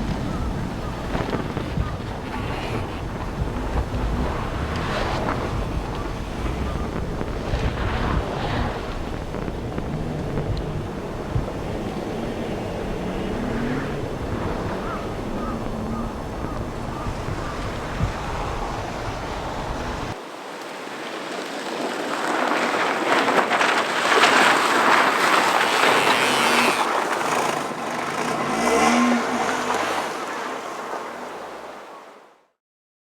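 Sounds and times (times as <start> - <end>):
tyres throwing snow: 0.0 - 20.2
wind on microphone: 0.0 - 20.2
rally car engine passing: 2.4 - 20.2, 25.1 - 30.7.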